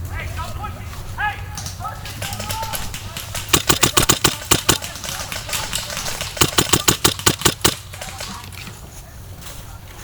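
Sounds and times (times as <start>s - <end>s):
airsoft gun firing bursts: 2.2s - 8.4s
airsoft gun single shots: 3.4s - 5.2s, 6.0s - 7.9s.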